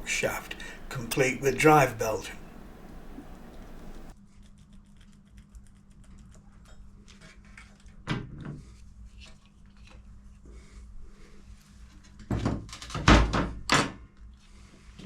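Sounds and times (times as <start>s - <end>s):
light clicks of metal parts: 0.0s - 4.1s
steady low hum: 0.0s - 4.1s.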